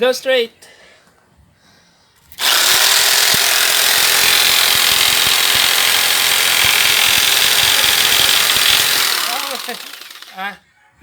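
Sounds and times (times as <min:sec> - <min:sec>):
electric jigsaw sawing: 0:02.4 - 0:10.6.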